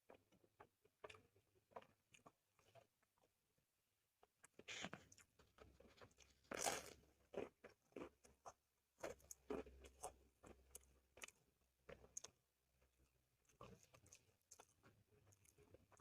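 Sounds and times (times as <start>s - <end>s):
chewing mouth sounds: 13.4s - 16.0s.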